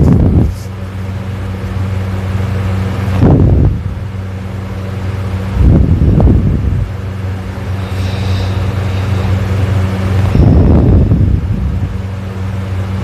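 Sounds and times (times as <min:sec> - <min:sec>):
steady low hum: 0:00.0 - 0:13.0
soft breathy sound: 0:07.7 - 0:09.6
person snoring loudly: 0:07.7 - 0:11.1.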